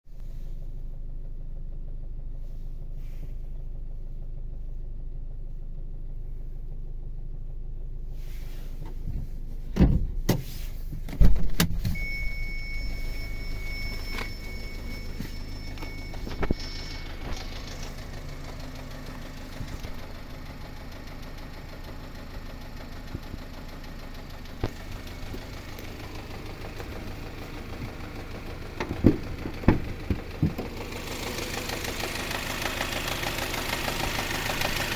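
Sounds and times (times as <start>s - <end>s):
car engine humming: 0.2s - 34.9s
steady high beep: 12.0s - 17.2s
loud thuds: 28.8s - 30.8s.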